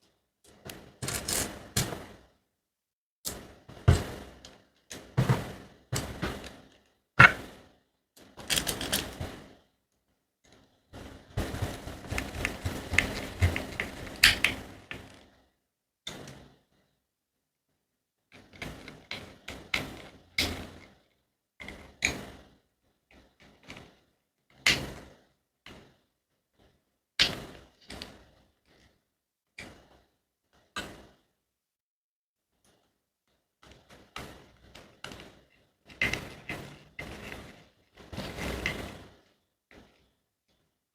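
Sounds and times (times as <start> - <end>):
rattling and scraping: 11.0 - 15.2, 34.2 - 39.2.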